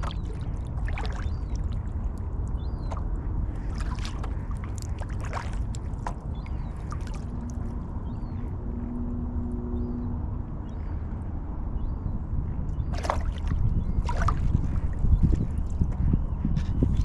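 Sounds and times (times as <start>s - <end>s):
paddle strokes splashing: 0.0s - 2.0s, 2.7s - 7.6s, 12.9s - 15.2s
wind rumble on microphone: 0.0s - 17.0s.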